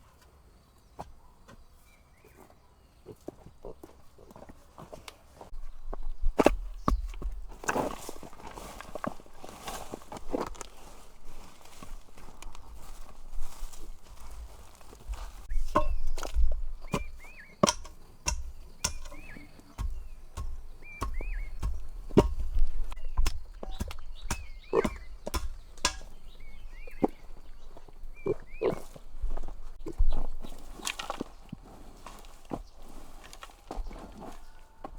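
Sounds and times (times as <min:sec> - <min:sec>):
knocks and thuds: 0:06.4 - 0:07.7, 0:15.5 - 0:26.2.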